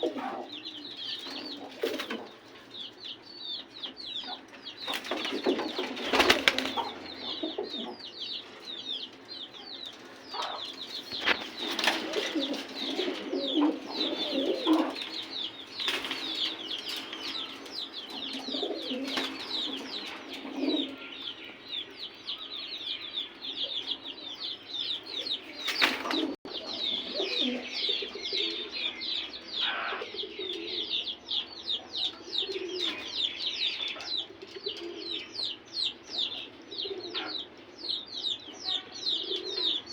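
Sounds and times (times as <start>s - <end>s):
pigeons cooing: 0.0s - 2.6s, 4.2s - 9.0s, 9.9s - 21.4s, 25.0s - 31.2s, 31.8s - 35.6s, 36.2s - 37.6s, 39.0s - 39.9s
small birds chirping: 0.0s - 39.9s
wings flapping: 4.9s - 7.0s, 11.0s - 17.5s, 25.6s - 26.4s.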